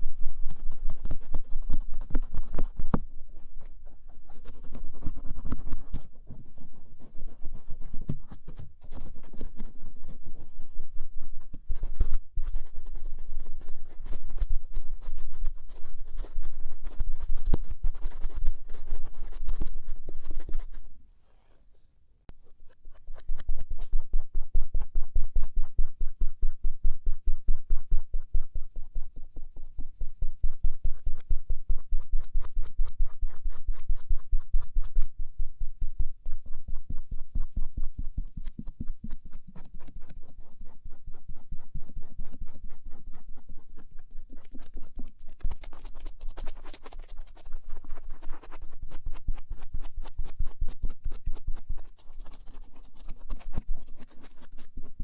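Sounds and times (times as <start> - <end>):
cotton swab scratching ear: 0.0 - 21.0, 22.3 - 24.4, 36.3 - 55.0.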